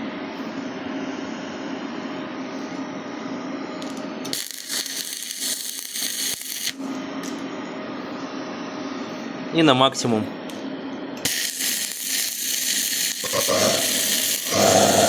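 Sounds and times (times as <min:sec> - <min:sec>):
cooling fan humming: 0:00.0 - 0:15.0
loud hiss: 0:11.2 - 0:15.0.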